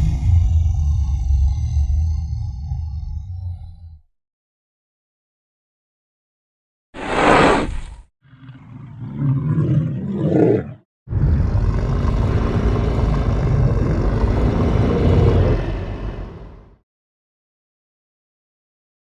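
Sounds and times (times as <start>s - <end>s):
long loud monster roar: 8.3s - 16.8s
monster growl: 8.3s - 16.8s.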